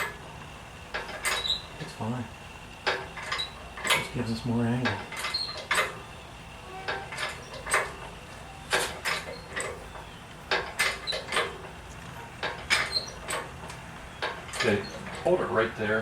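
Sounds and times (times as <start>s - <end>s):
hoist chain metallic clanks: 0.9s - 1.6s, 2.8s - 6.0s, 6.7s - 8.1s, 8.7s - 15.5s.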